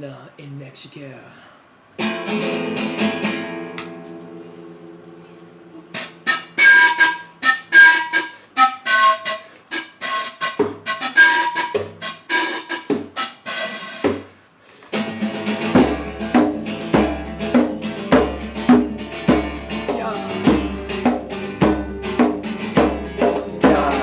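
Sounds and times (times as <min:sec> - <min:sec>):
strummed guitar chords: 0:02.0 - 0:06.7, 0:14.9 - 0:24.0
picked guitar melody: 0:02.0 - 0:09.3, 0:14.9 - 0:24.0
bass line: 0:16.9 - 0:24.0.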